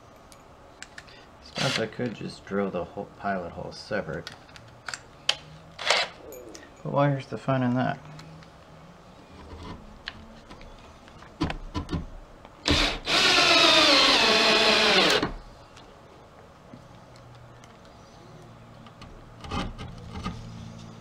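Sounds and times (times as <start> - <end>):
power drill drilling into wood: 12.6 - 15.4.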